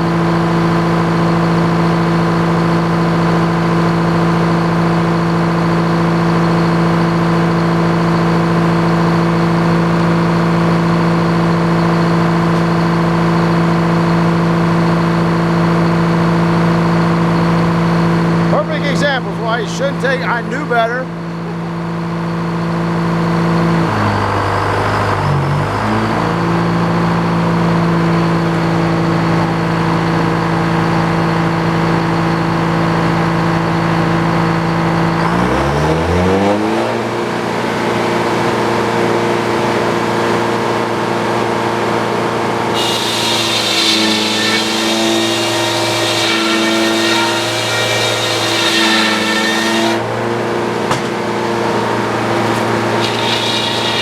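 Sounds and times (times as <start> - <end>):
sawmill engine running: 0.0 - 36.2, 36.9 - 54.0
saw blade whining through log: 40.3 - 54.0.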